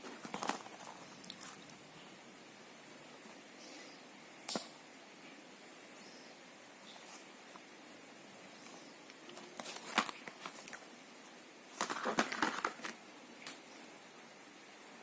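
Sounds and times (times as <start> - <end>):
packaging crinkling: 0.0 - 1.7, 9.3 - 10.8, 11.7 - 13.0.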